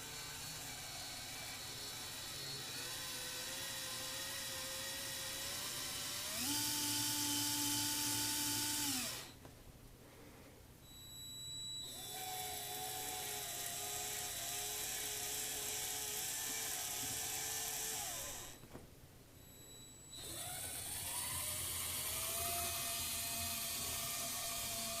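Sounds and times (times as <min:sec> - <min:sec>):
toy train motor whining: 0:00.0 - 0:09.3, 0:11.8 - 0:18.6, 0:20.2 - 0:25.0.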